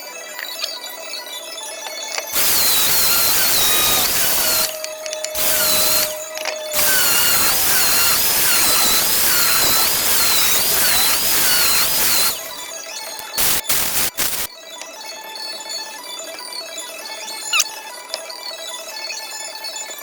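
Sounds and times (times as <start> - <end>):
power tool grinding with whine: 2.1 - 14.5.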